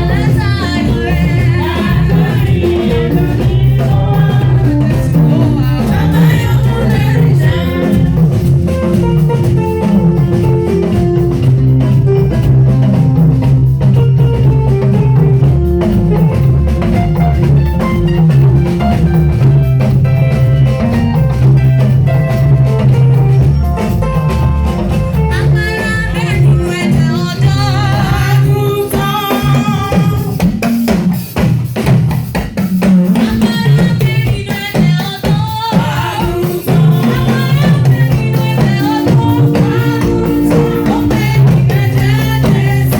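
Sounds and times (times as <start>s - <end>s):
voices singing: 0.0s - 8.5s, 25.4s - 30.4s, 33.2s - 42.9s
bass line: 0.0s - 30.4s, 36.1s - 42.9s
drum kit: 0.0s - 42.9s
praise band music: 0.0s - 42.9s.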